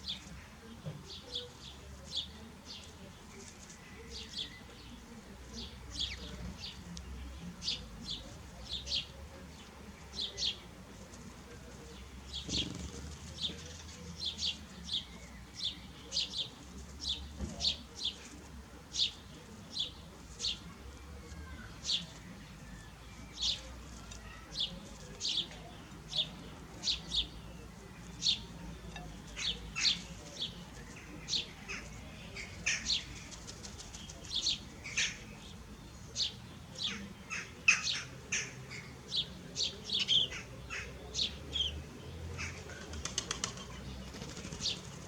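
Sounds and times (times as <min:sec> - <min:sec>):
small birds chirping: 0:00.0 - 0:45.0.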